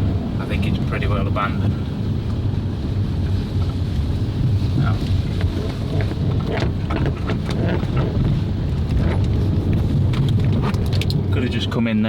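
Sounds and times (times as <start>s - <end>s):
van engine and road rumble: 0.0s - 12.0s
small rattles and knocks: 4.8s - 11.3s.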